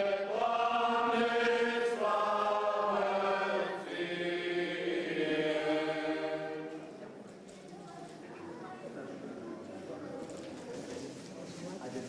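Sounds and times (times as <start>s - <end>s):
chanting voices: 0.0s - 7.3s.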